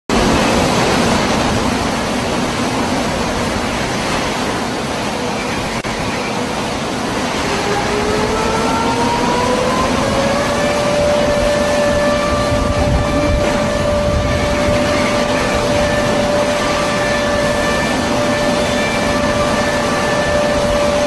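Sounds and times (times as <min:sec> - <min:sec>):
loud steady rushing noise: 0:00.1 - 0:21.0
warning siren winding up: 0:07.2 - 0:21.0.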